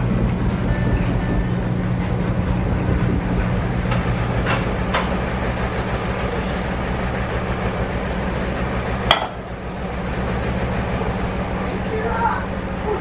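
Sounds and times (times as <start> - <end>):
steady low hum: 0.0 - 13.0
kitchenware clinking: 9.1 - 9.4.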